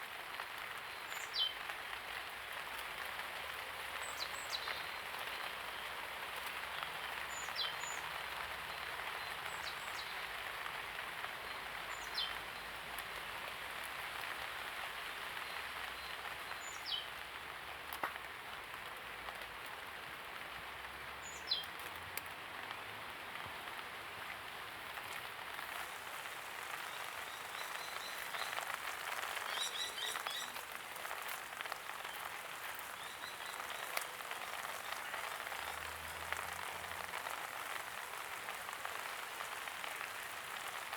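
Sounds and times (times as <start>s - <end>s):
steady rain falling: 0.0s - 40.9s
bird chirps: 29.4s - 30.6s.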